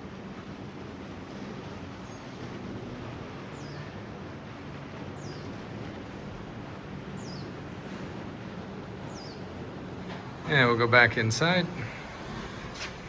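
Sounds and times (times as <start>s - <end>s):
wind: 0.0s - 13.0s.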